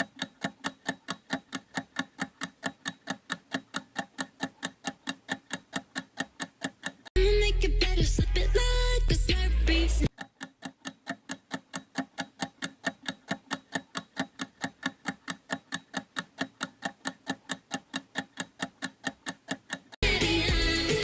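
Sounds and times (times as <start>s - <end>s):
steady ticking: 0.0s - 21.0s
loud pop music: 7.2s - 10.1s, 20.0s - 21.0s.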